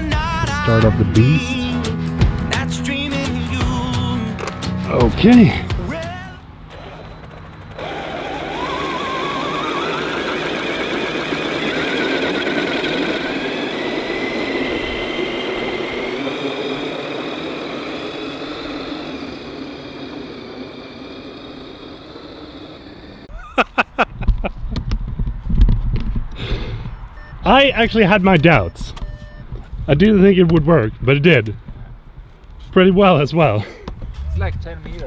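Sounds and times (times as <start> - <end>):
electric motor whining: 5.3 - 23.3.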